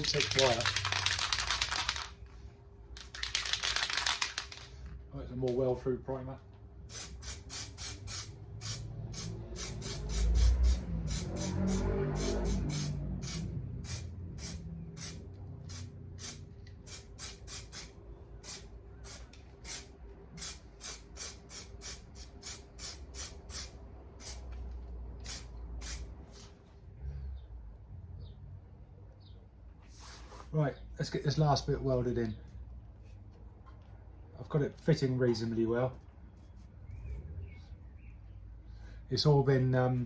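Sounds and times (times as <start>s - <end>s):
aerosol spray bursts: 6.9s - 17.9s, 25.2s - 26.6s.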